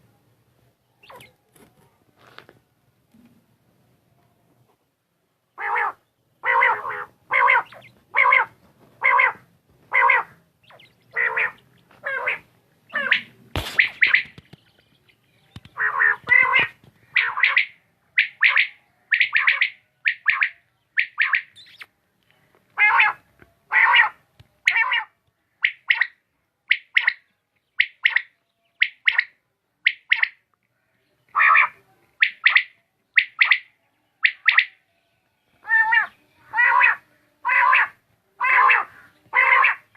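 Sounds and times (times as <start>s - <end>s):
quail calling: 1.0s - 1.4s, 5.6s - 14.5s, 15.6s - 21.9s, 22.8s - 27.2s, 27.8s - 30.4s, 31.3s - 34.8s, 35.6s - 39.9s.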